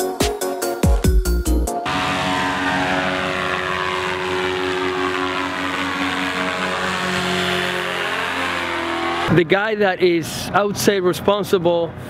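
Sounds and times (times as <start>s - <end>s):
electronic music with a beat: 0.0s - 1.8s
paramotor engine droning: 1.8s - 9.4s.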